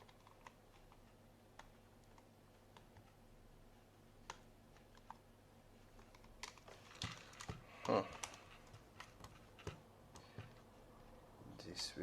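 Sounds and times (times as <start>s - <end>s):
small clicks and taps: 0.0s - 3.2s, 3.8s - 5.2s, 5.8s - 10.7s.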